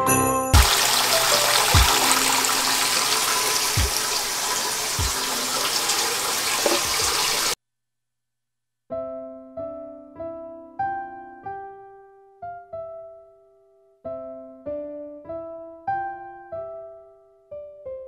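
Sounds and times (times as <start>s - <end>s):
soft piano music: 0.0s - 7.5s, 8.9s - 18.0s
water rushing: 0.6s - 7.6s.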